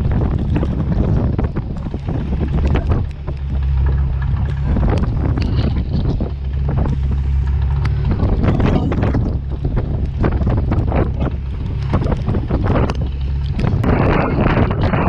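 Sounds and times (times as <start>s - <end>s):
boat engine humming: 0.0s - 15.0s
heavy rain and spray tapping: 0.0s - 15.0s
wind buffeting microphone: 0.0s - 15.0s.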